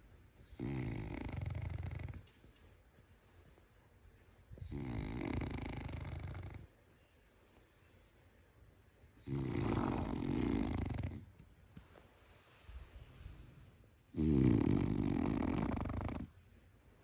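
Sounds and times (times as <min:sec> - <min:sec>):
dog snoring: 0:00.4 - 0:02.3, 0:04.6 - 0:06.7, 0:09.2 - 0:11.3, 0:14.1 - 0:16.4
faint dog breath: 0:03.0 - 0:08.5, 0:09.6 - 0:13.9.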